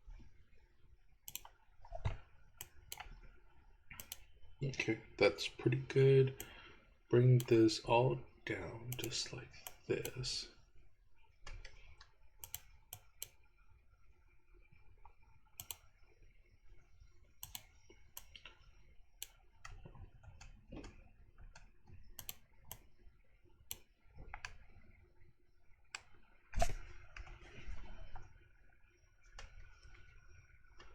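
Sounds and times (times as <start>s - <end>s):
faint low room hum: 0.0s - 30.9s
mouse and keyboard clicks: 1.3s - 3.2s, 4.0s - 4.3s, 7.4s - 7.6s, 8.9s - 10.3s, 11.6s - 13.4s, 15.6s - 15.9s, 17.4s - 18.4s, 22.2s - 22.9s.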